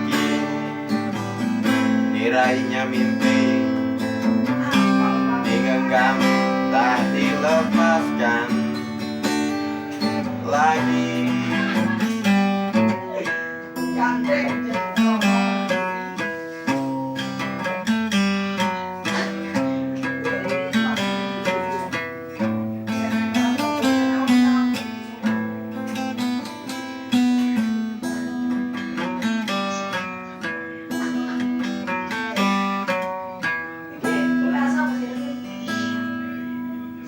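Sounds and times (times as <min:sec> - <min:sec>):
acoustic guitar playing: 0:00.0 - 0:37.0.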